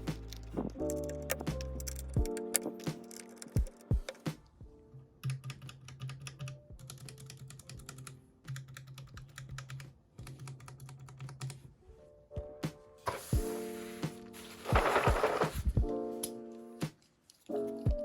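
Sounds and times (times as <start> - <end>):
soft background music: 0.0 - 18.0
clicky keyboard typing: 0.3 - 4.2, 5.2 - 11.6.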